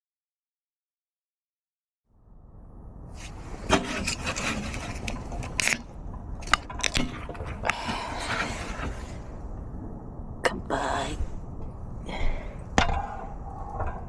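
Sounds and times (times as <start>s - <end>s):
rubbing and scraping: 3.7s - 9.2s
sharp clicks and knocks: 5.4s - 5.8s, 6.4s - 8.1s.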